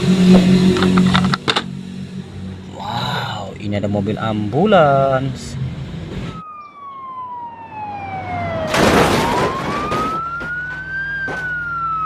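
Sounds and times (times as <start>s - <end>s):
rattling noise: 0.1s - 1.9s
toy siren wailing: 6.3s - 12.0s.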